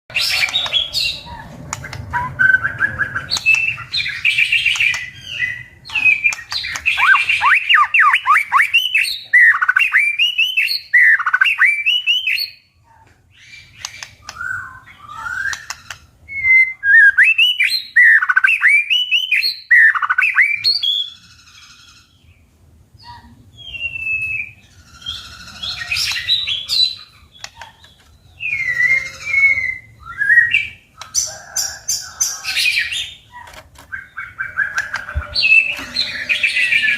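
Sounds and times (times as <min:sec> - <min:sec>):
bird whistled song: 0:00.1 - 0:12.7, 0:13.4 - 0:22.1, 0:23.0 - 0:36.9
sharp clicking bird notes: 0:00.2 - 0:07.8, 0:13.7 - 0:14.7, 0:15.4 - 0:16.1, 0:27.3 - 0:28.2, 0:33.4 - 0:36.1.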